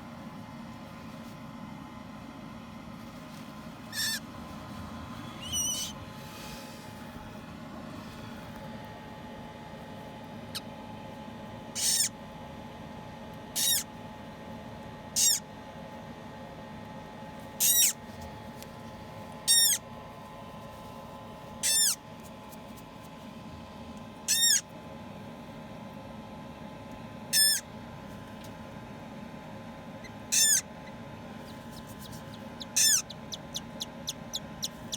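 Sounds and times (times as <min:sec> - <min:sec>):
steady hum: 0:00.0 - 0:34.9
chick cheeping: 0:31.5 - 0:34.9.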